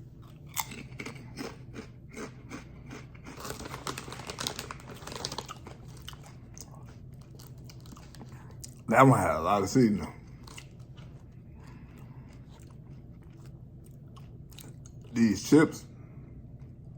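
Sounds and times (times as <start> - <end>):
crunching tortilla chips: 0.3 - 8.9.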